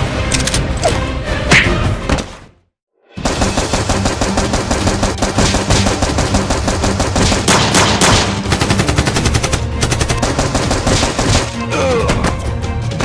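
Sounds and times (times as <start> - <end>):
rapid automatic gunfire: 3.2 - 11.6.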